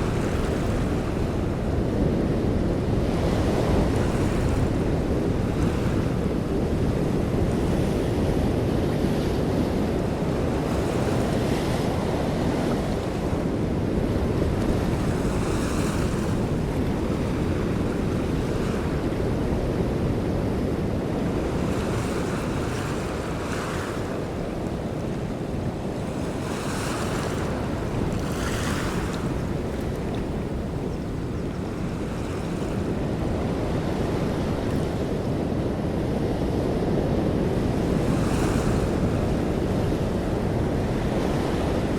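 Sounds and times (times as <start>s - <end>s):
waves splashing: 0.0s - 41.9s
wind buffeting microphone: 0.0s - 41.9s.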